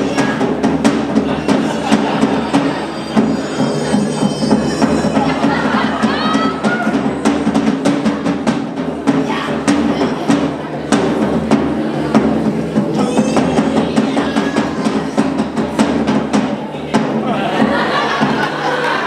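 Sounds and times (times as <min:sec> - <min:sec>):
sharp quick percussion hits: 0:00.0 - 0:19.0.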